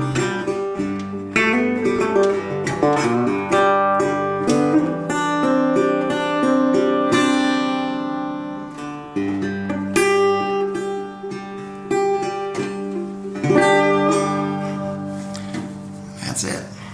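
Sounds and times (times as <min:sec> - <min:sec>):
guitar chord ringing: 0:00.0 - 0:16.9
resonator guitar picked notes: 0:00.0 - 0:16.9.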